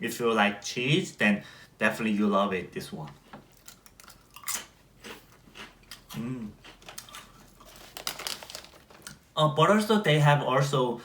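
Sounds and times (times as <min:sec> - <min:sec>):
chips crunching while chewed: 0:03.5 - 0:09.2
person humming: 0:06.2 - 0:06.6.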